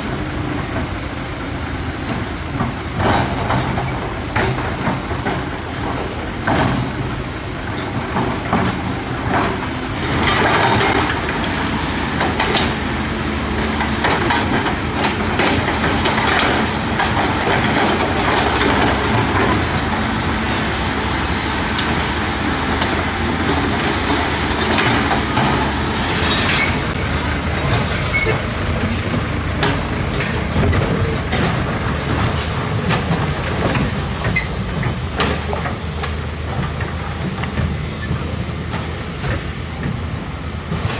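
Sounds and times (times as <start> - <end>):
excavator diesel engine running: 0.0 - 40.9
loud rushing noise: 18.9 - 33.2
metallic knocks and clanks: 27.6 - 36.7.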